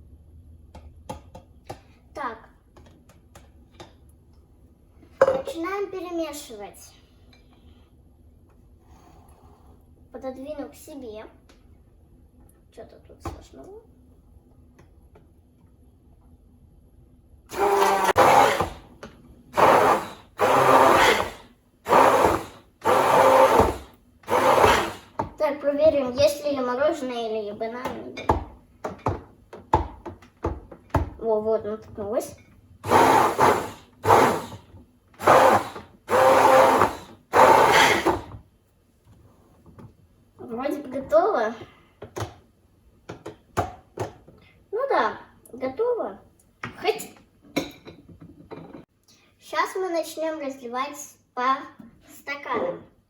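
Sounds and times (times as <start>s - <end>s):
electric blender: 17.5s - 18.9s, 19.5s - 25.3s, 32.8s - 38.4s.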